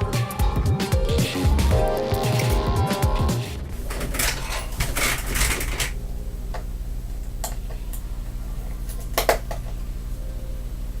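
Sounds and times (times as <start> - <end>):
low hum: 3.6 - 11.0.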